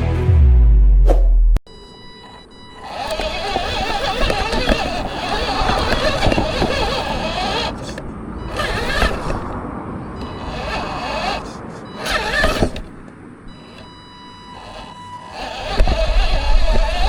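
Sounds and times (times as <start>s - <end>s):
rc truck motor whining: 1.7s - 17.0s.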